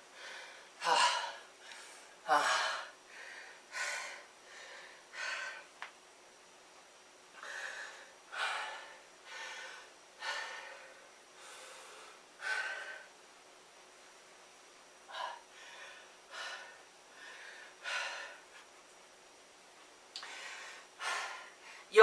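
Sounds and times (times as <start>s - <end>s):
man breathing hard: 0.1s - 5.8s, 7.4s - 13.1s, 15.1s - 18.6s, 20.2s - 21.9s.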